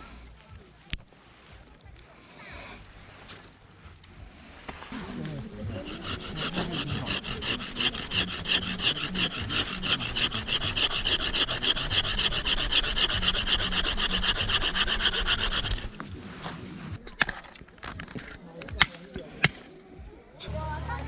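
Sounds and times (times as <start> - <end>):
folding saw cutting wood: 4.9 - 17.4.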